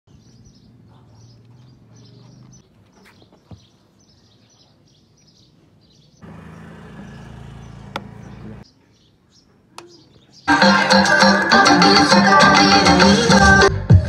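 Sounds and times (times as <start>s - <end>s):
small birds chirping: 0.1s - 10.5s
loud humming buzz: 6.2s - 8.6s.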